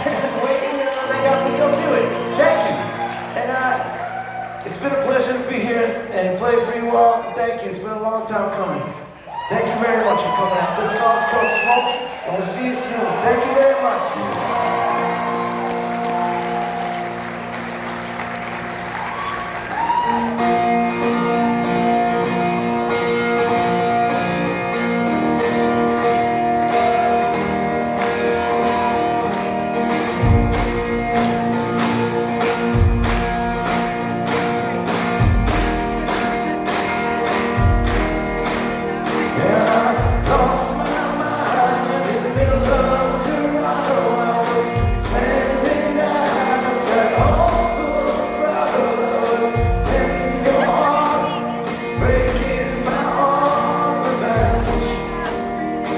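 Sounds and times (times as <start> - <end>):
band playing slow song: 0.0 - 8.6, 9.6 - 55.9
man singing: 38.8 - 55.9.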